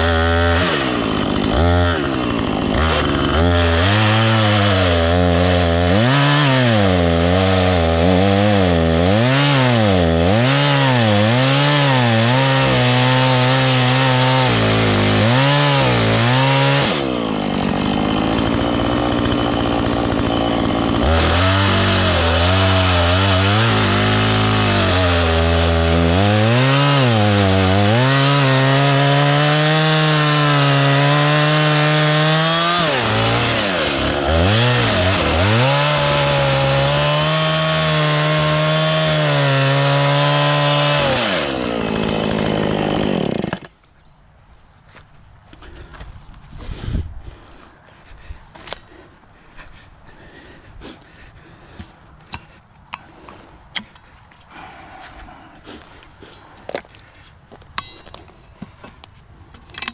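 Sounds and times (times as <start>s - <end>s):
chainsaw cutting trunk: 0.0s - 43.8s.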